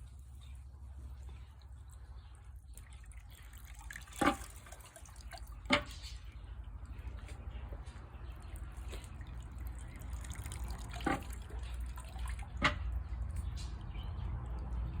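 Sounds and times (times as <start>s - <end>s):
low steady hum: 0.0s - 15.0s
water dripping: 0.0s - 15.0s.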